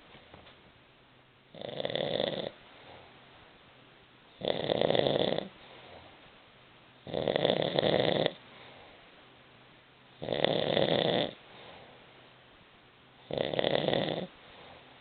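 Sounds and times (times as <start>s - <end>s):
woman snoring loudly: 1.6s - 2.5s, 4.4s - 5.5s, 7.1s - 8.4s, 10.2s - 11.4s, 13.3s - 14.3s
quiet breathing: 2.4s - 3.6s, 4.8s - 6.5s, 7.1s - 9.4s, 11.2s - 12.4s, 13.2s - 15.0s.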